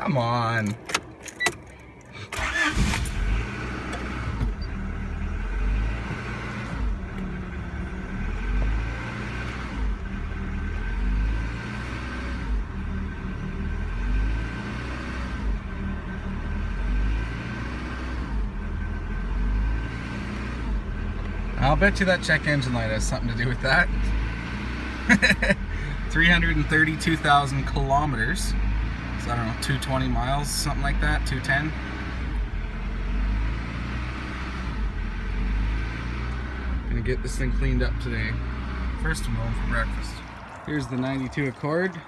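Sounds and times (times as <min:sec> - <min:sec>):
car engine idling unevenly: 0:00.0 - 0:11.8, 0:20.6 - 0:33.2, 0:36.2 - 0:42.0.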